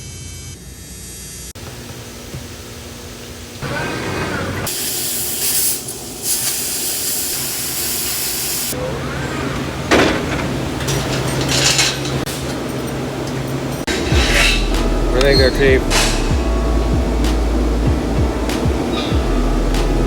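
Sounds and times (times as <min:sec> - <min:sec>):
plasma cutter hissing: 0:04.7 - 0:08.8
steady low hum: 0:11.7 - 0:20.0.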